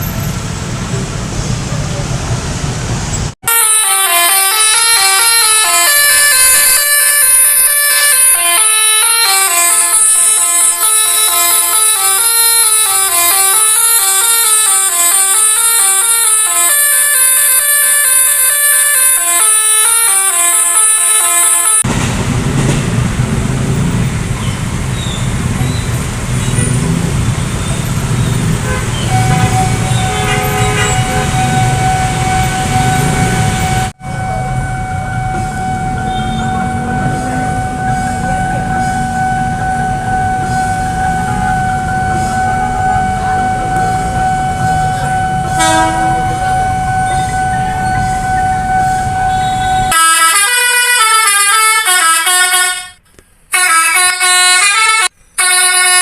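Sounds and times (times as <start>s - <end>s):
electric train rumbling: 0.0s - 52.0s
multi-note horn tune: 3.4s - 21.9s, 28.6s - 56.0s
steady high tone: 3.4s - 21.9s, 29.0s - 53.0s.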